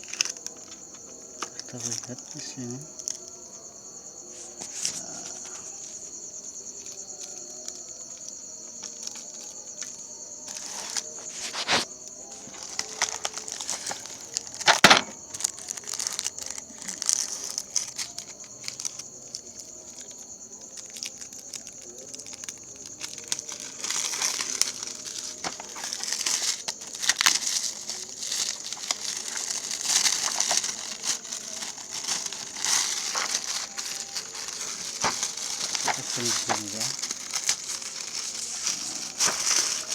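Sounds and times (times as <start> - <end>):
plastic and paper crinkling: 0.0 - 3.5, 4.2 - 39.9.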